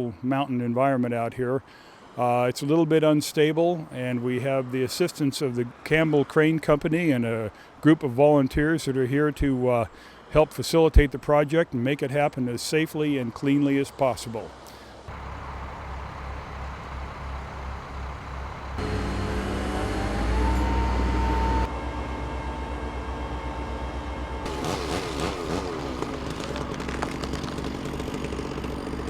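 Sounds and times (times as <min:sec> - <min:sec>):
crane engine throbbing: 0:15.1 - 0:29.0
engine whine: 0:15.1 - 0:29.0.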